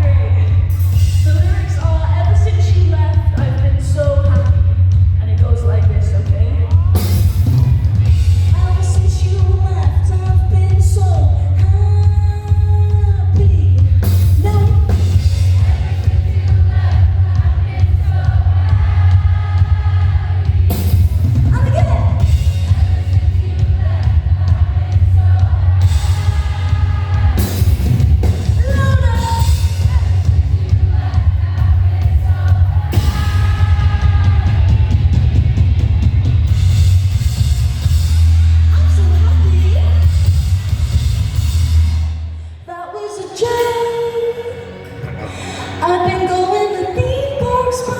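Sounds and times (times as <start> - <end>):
live pop-rock band: 0.0 - 42.6, 43.3 - 47.9
woman singing: 8.4 - 20.2, 21.5 - 35.1, 42.6 - 44.7, 45.7 - 47.9.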